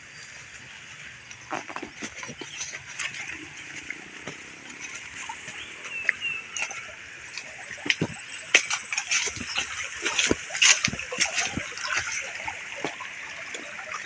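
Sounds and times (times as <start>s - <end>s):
footsteps crunching on trail: 0.0s - 14.0s
bird chirps: 4.6s - 10.5s.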